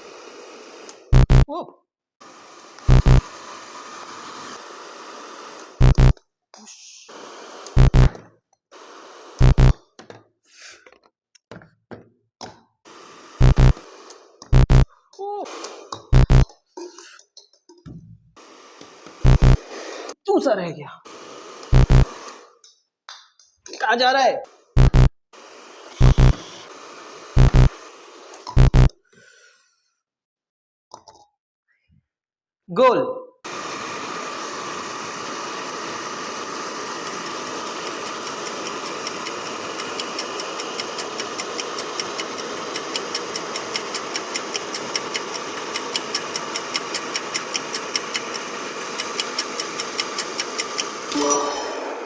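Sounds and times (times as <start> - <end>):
hair dryer blowing: 0.0 - 1.4, 2.2 - 6.2, 7.1 - 9.8, 12.9 - 14.8, 18.4 - 20.2, 21.0 - 22.6, 24.9 - 28.8, 33.5 - 52.0
electronic music: 1.2 - 1.5, 2.9 - 3.2, 5.8 - 6.2, 7.8 - 8.1, 9.4 - 9.8, 13.4 - 13.8, 14.6 - 14.9, 16.2 - 16.5, 19.3 - 19.6, 24.8 - 25.1, 26.0 - 26.4, 51.1 - 52.0
steady hiss: 6.6 - 7.8.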